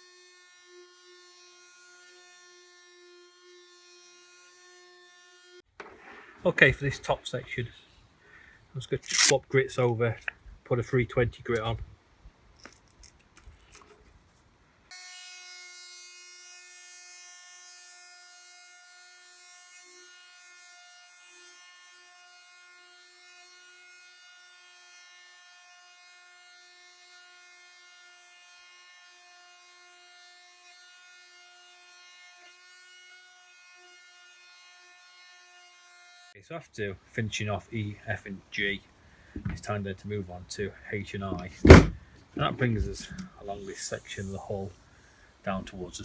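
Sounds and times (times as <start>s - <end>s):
faint handling noises: 8.9s - 10.4s, 41.3s - 44.7s.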